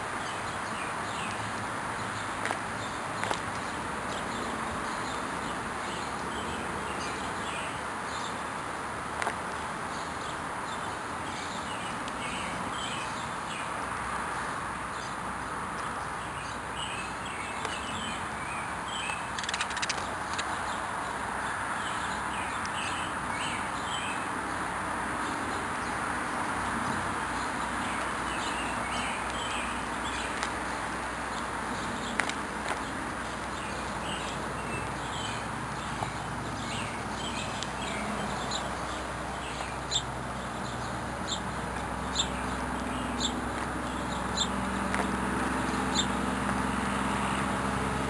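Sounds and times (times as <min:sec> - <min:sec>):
birds chirping: 0:15.8 - 0:48.0
sharp clicks: 0:19.1 - 0:20.5.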